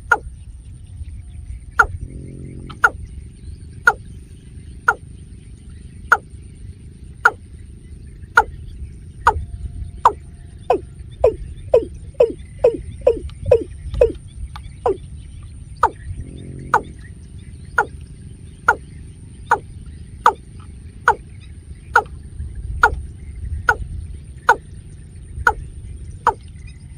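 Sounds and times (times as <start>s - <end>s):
watercock calling: 0.0s - 0.3s, 1.8s - 3.0s, 10.0s - 14.2s, 14.8s - 15.0s, 15.8s - 17.0s, 17.8s - 18.0s, 19.5s - 20.5s, 22.0s - 22.2s, 26.3s - 26.5s
faint high whine: 0.0s - 26.9s
steady low rumble: 0.0s - 26.9s.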